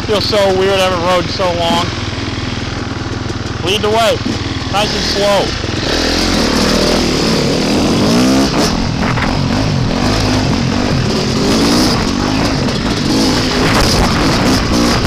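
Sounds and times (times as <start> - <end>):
dirt bike engine revving: 0.0 - 15.0
wind buffeting microphone: 7.6 - 15.0.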